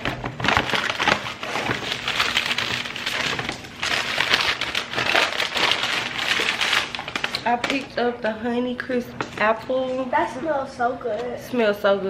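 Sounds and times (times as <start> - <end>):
shopping bag rustling: 0.0 - 7.9.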